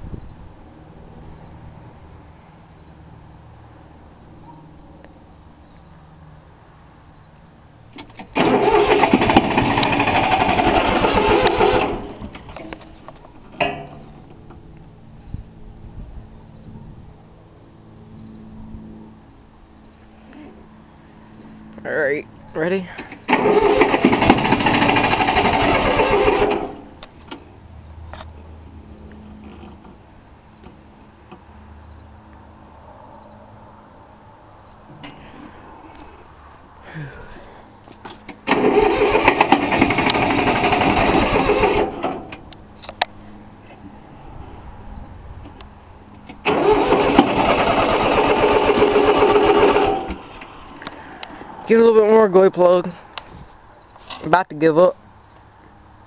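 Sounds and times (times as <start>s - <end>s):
diesel engine starter cranking: 7.9s - 14.6s, 23.0s - 27.4s, 38.2s - 42.6s, 46.2s - 51.0s.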